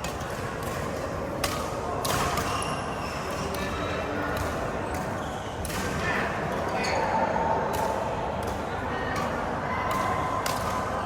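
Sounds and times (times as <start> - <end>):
people talking: 5.7 - 11.0
racket striking shuttlecock: 9.2 - 10.9.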